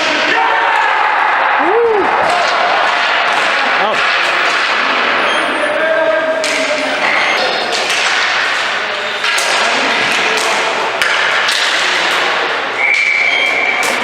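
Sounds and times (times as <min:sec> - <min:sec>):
ball and sticks knocking boards: 0:02.1 - 0:05.2, 0:06.4 - 0:14.0.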